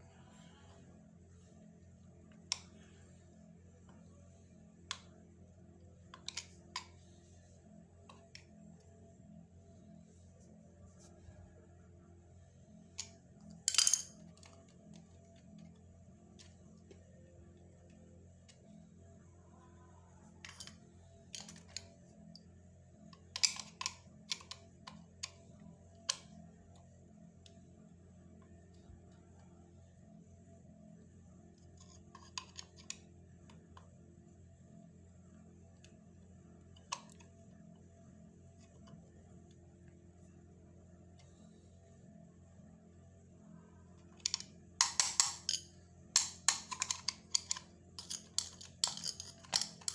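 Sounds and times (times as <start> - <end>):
screwdriver and plastic clicks: 46.2 - 49.9.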